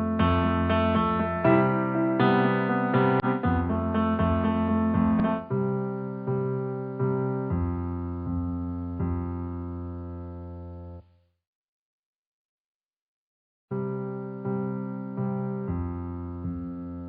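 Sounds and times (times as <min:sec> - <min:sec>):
sustained keyboard chords: 0:00.0 - 0:11.0, 0:13.8 - 0:17.0.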